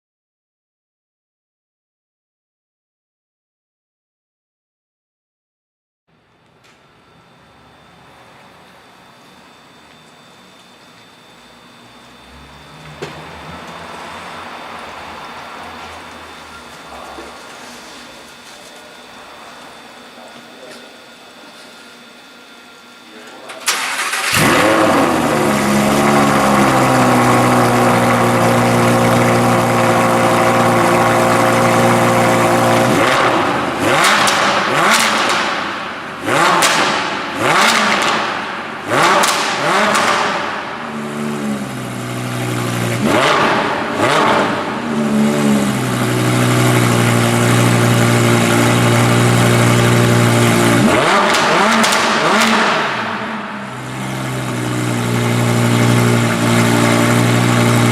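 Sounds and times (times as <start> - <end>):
car engine revving: 23.7 - 57.9
exhaust crackles: 23.8 - 57.9.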